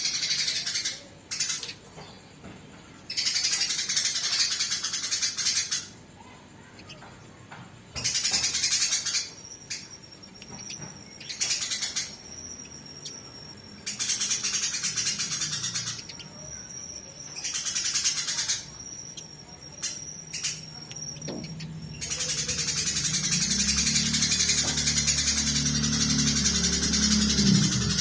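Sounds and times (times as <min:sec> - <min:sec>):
sparrows chattering harshly: 0:00.0 - 0:28.0
faint steady high tone: 0:05.9 - 0:28.0.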